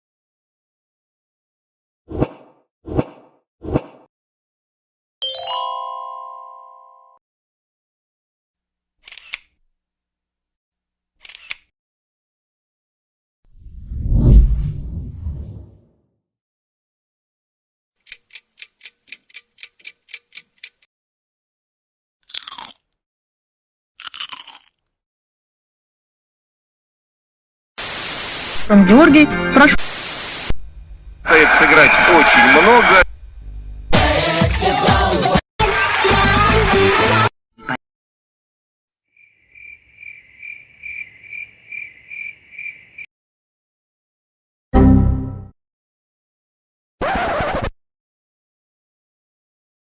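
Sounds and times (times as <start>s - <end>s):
clock ticking: 18.0s - 20.9s
high cricket chirps: 39.2s - 43.1s.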